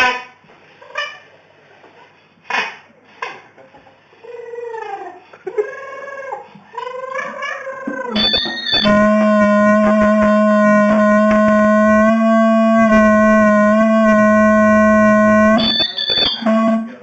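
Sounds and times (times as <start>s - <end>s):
loud steady horn tone: 8.2s - 17.0s
short horn blasts: 8.2s - 17.0s.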